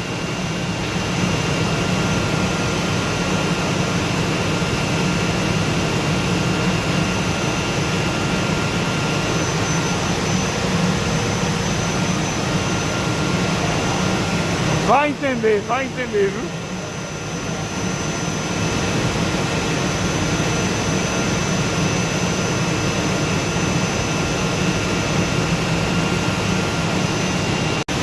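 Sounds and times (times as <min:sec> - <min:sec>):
faint high whines: 0:06.8 - 0:25.4
wood-cutting machine humming: 0:08.3 - 0:18.2.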